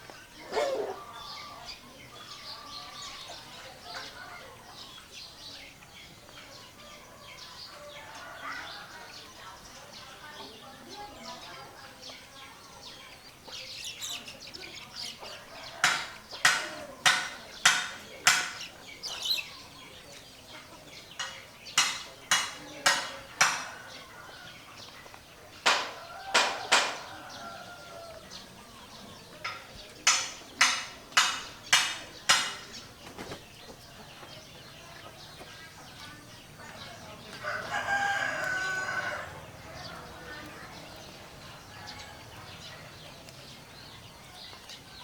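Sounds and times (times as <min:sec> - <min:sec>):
rooster crowing: 0:25.9 - 0:28.3, 0:37.4 - 0:40.7.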